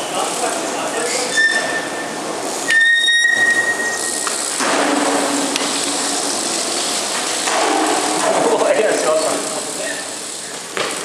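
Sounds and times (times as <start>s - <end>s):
high steady squeal: 1.0s - 4.6s
steady hiss: 3.7s - 11.0s.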